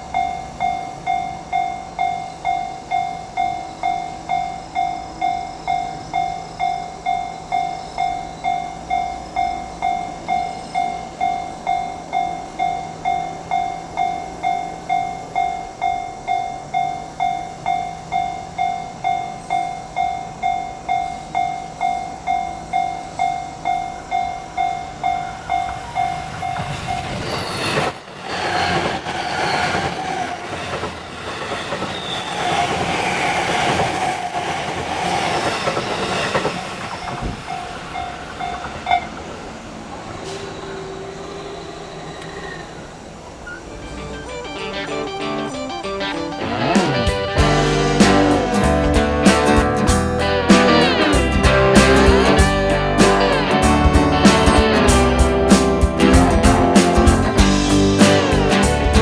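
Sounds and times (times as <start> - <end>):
level crossing warning bell: 0.0 - 27.2, 43.7 - 46.8.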